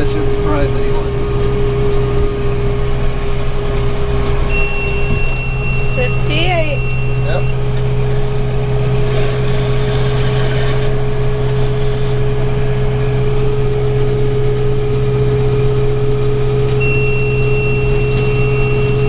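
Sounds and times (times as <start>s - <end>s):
tractor engine running: 0.0s - 19.0s
high-pitched electronic tone: 4.5s - 7.6s, 16.8s - 19.0s.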